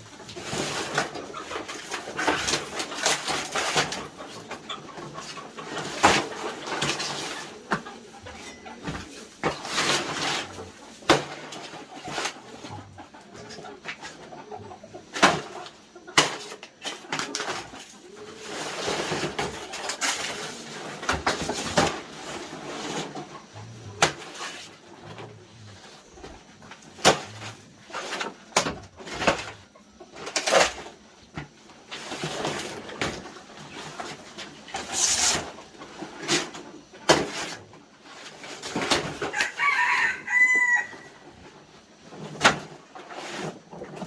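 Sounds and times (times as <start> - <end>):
dove cooing: 2.2 - 10.8, 16.7 - 21.0.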